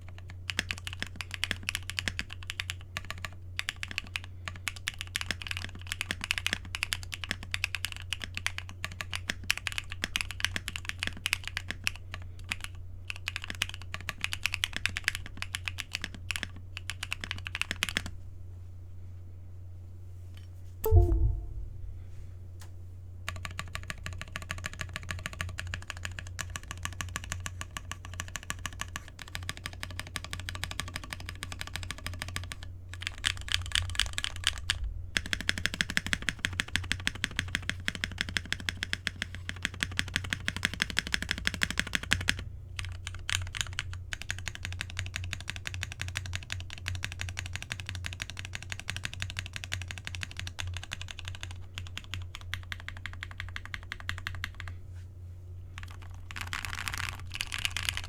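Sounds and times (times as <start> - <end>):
mechanical keyboard typing: 0.0 - 18.1, 23.3 - 34.6, 35.2 - 54.7, 55.8 - 58.0
low steady hum: 20.9 - 22.7.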